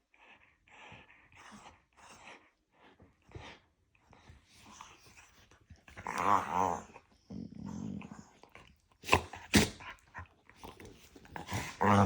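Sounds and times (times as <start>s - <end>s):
dog growling: 5.9s - 12.0s.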